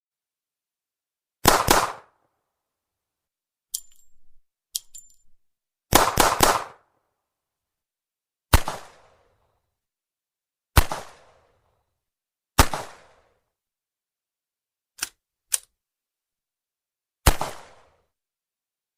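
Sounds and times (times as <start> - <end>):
sharp metallic clicks: 3.7 - 5.4, 15.0 - 15.7.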